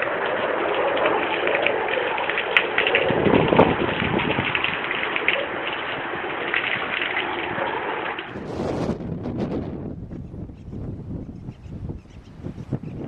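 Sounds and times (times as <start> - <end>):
heavy rain drumming: 0.0 - 11.2.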